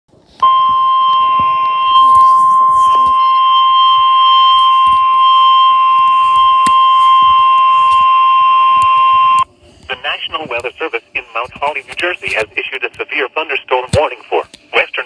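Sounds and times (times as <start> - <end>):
high-pitched alert tone: 0.4 - 9.4.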